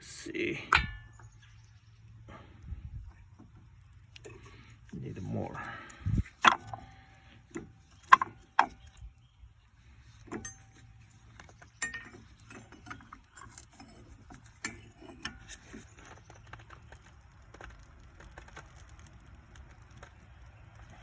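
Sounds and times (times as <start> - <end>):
metal tools clinking: 10.1 - 16.2.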